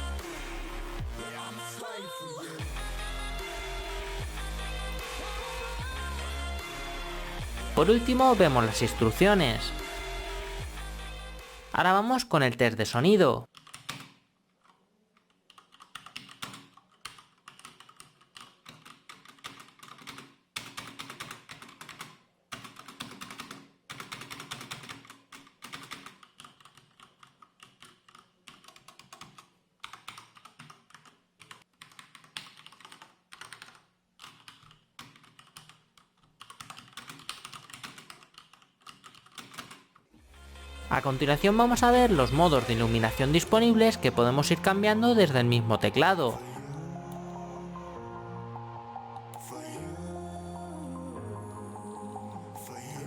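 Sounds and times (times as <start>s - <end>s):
mechanical keyboard typing: 13.5s - 14.2s, 15.3s - 40.0s.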